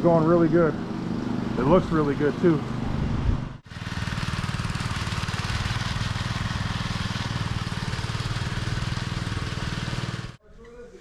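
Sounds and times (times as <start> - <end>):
power trowel engine running: 0.0 - 10.4.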